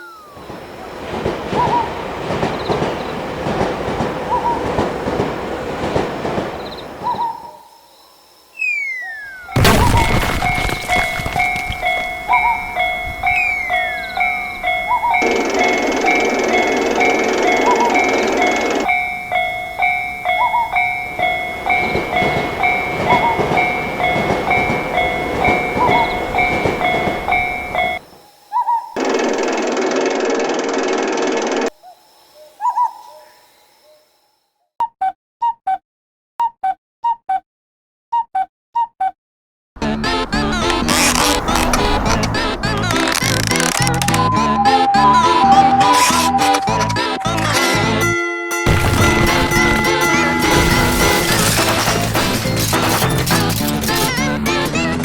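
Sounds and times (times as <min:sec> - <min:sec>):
falling whistle-like slide tone: 0:00.0 - 0:00.8, 0:07.1 - 0:09.6, 0:31.8 - 0:34.4, 0:43.8 - 0:47.4
train passing: 0:00.0 - 0:08.5, 0:11.0 - 0:30.2, 0:39.8 - 0:55.0
level crossing alarm ringing: 0:09.1 - 0:28.5, 0:39.8 - 0:54.8
sudden loud hit: 0:09.6 - 0:11.8, 0:48.7 - 0:51.4
bright chime jingle: 0:10.6 - 0:28.0, 0:46.7 - 0:52.1.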